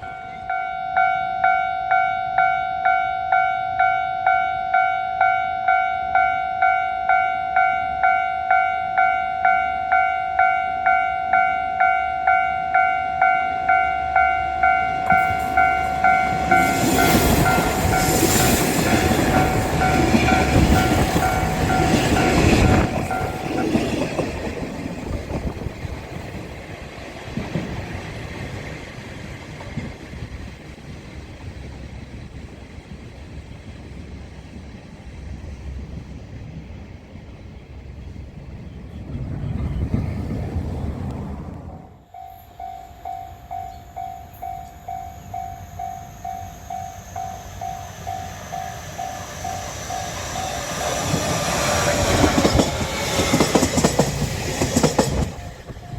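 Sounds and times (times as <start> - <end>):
level-crossing alarm ringing: 0.0 - 24.2, 42.1 - 55.9
diesel railcar passing: 0.0 - 55.9
train wheels clacking: 14.6 - 30.4, 46.3 - 55.9.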